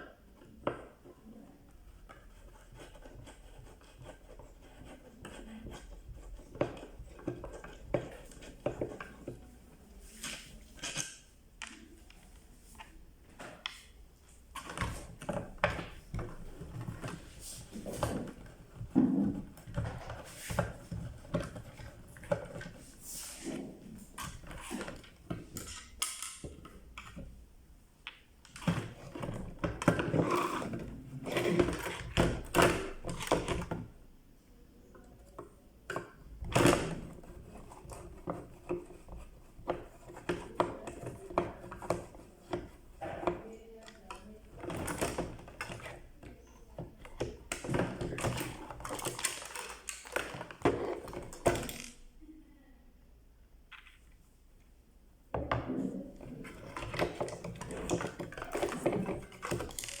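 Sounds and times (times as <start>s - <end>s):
clicks and rattles of tools: 39.7s - 52.0s, 56.7s - 60.0s.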